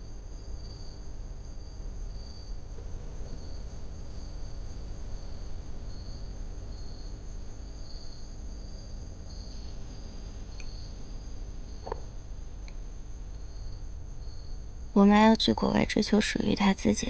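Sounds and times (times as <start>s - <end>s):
crickets chirping: 0.0s - 17.0s
low rumble: 1.6s - 14.9s.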